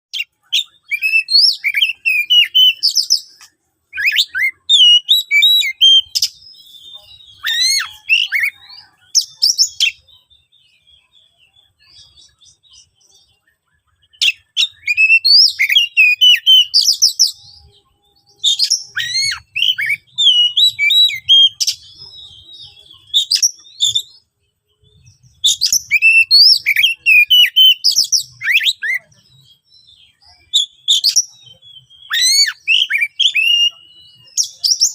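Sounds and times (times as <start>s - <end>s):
magpie-robin singing harsh song: 0.1s - 34.9s.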